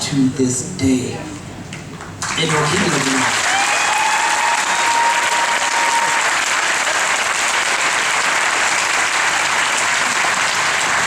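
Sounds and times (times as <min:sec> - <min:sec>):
audience applauding: 0:02.2 - 0:11.0.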